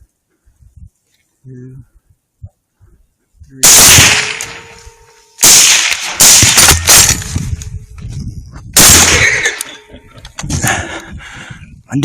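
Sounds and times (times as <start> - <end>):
rifle shots with echo: 3.6 - 7.4, 8.8 - 9.8.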